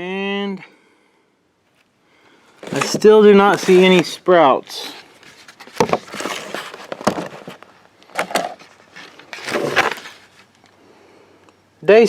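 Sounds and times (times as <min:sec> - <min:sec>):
objects knocking and rustling: 0:05.2 - 0:10.6.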